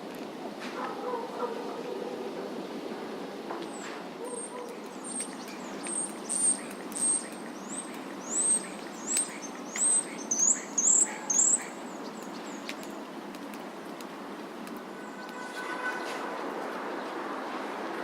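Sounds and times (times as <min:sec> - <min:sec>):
songbird chirping: 0:03.8 - 0:13.2.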